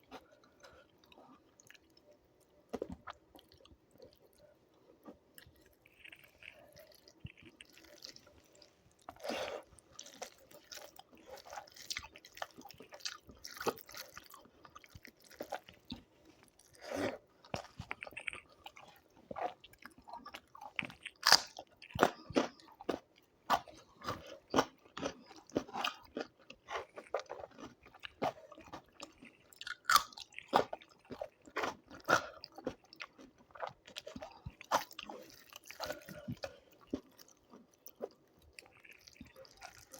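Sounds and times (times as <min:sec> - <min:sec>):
person chewing wetly: 0:00.0 - 0:39.9
crunchy bites: 0:20.8 - 0:23.8, 0:24.5 - 0:37.1.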